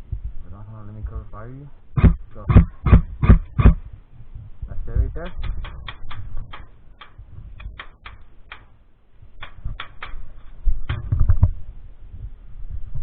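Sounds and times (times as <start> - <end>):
airsoft gun shots: 2.0 - 3.8
thumps on microphone: 2.0 - 3.9.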